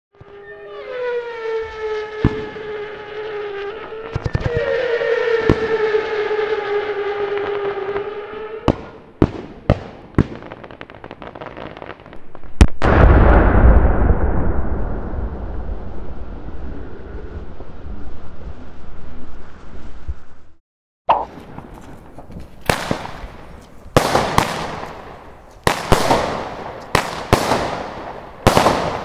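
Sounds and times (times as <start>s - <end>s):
siren-like wail: 0.2s - 8.7s
fireworks bangs: 0.2s - 20.0s, 21.1s - 29.0s
rumbling fireworks barrage: 0.2s - 20.3s, 21.2s - 29.0s.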